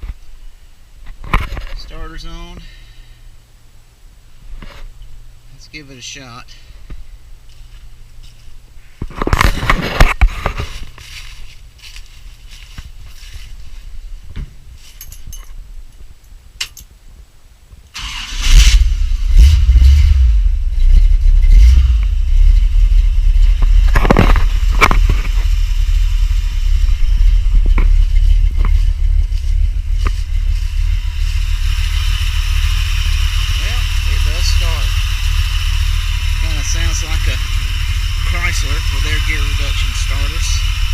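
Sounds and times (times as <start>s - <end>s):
engine running steadily: 18.2s - 40.9s.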